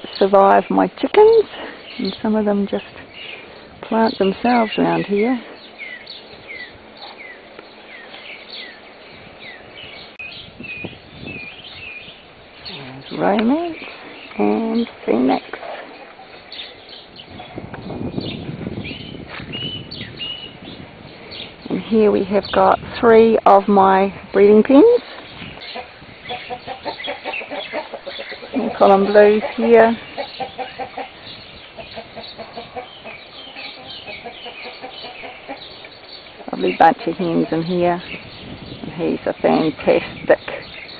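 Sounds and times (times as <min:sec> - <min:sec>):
high bird calls: 0:00.0 - 0:22.8, 0:25.0 - 0:40.9
hens clucking: 0:25.6 - 0:38.0.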